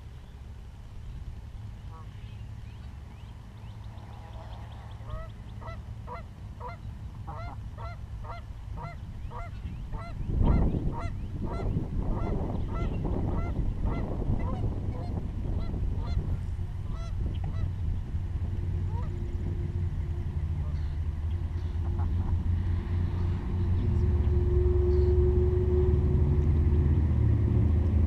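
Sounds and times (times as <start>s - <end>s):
geese honking: 1.9s - 2.1s, 4.1s - 17.8s, 18.7s - 26.4s.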